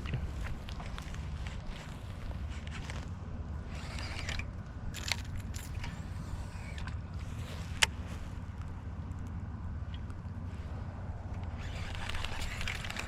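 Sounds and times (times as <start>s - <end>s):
steady low rumble: 0.0s - 13.0s
fishing reel clicking and rattling: 3.6s - 7.0s, 11.4s - 13.0s.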